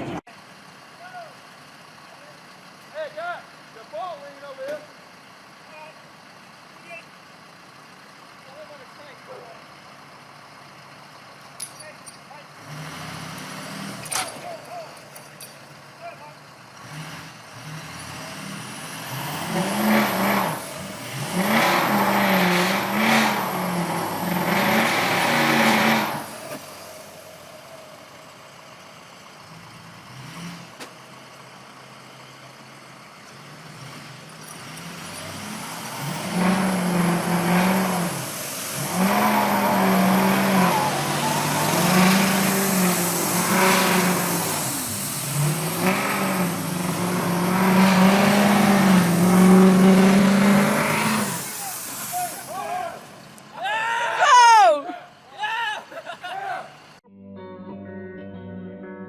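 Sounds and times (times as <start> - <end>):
vehicle engine revving: 12.5 - 14.8, 16.6 - 31.3, 33.4 - 53.4.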